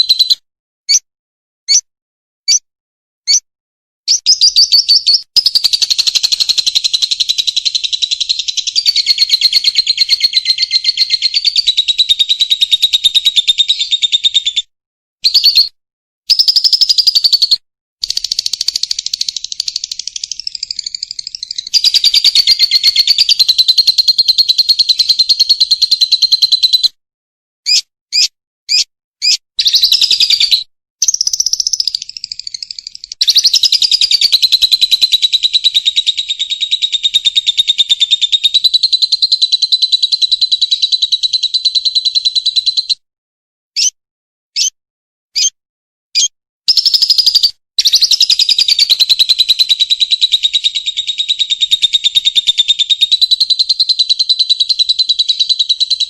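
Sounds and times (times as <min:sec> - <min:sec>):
short sharp bird chirps: 0:00.0 - 0:01.1, 0:01.7 - 0:01.9, 0:02.5 - 0:03.5, 0:04.1 - 0:14.6, 0:15.2 - 0:27.0, 0:27.6 - 0:38.6, 0:43.8 - 0:44.8, 0:45.4 - 0:45.6, 0:46.2 - 0:49.8
bird trilling chatter: 0:04.1 - 0:14.6, 0:16.3 - 0:26.9, 0:27.7 - 0:43.0, 0:46.2 - 0:56.0.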